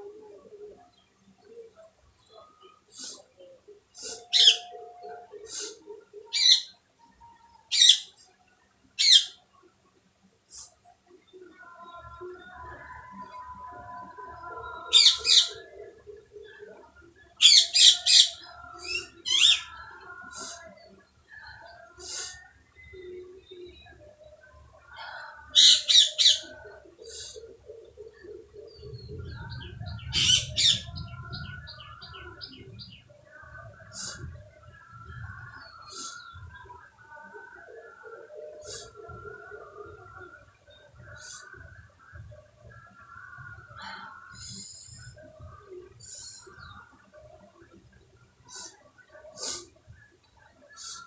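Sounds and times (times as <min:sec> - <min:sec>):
birds squawking: 0:17.4 - 0:19.7, 0:30.1 - 0:30.9
bird chirping: 0:28.1 - 0:33.2.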